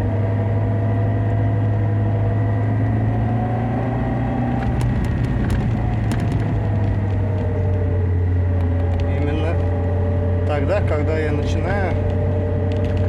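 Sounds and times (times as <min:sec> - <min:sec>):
car cabin low hum: 0:00.0 - 0:13.0
droning drivetrain tone: 0:00.0 - 0:13.0.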